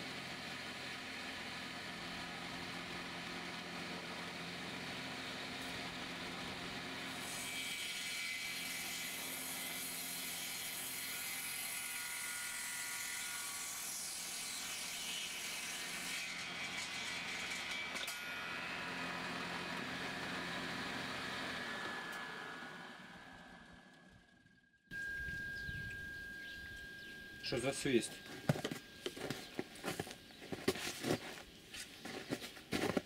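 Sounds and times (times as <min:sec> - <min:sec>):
circular saw cutting board: 0:15.5 - 0:33.0.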